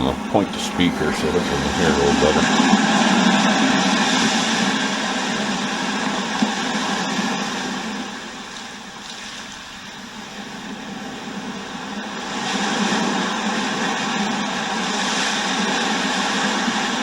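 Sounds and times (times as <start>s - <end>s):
ocean waves through small speaker: 0.0s - 3.2s.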